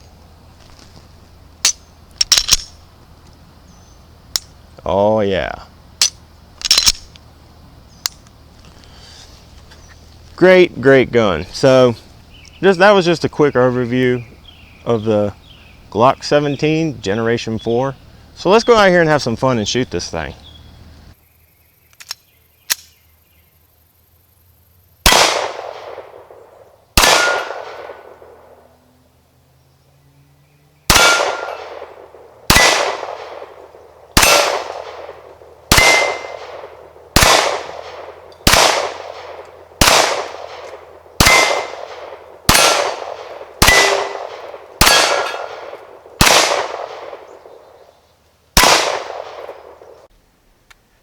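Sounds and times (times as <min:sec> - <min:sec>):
pistol shots: 0:25.0 - 0:26.4, 0:27.0 - 0:28.6, 0:30.9 - 0:47.6, 0:48.6 - 0:50.0
steel target ringing: 0:43.6 - 0:45.6.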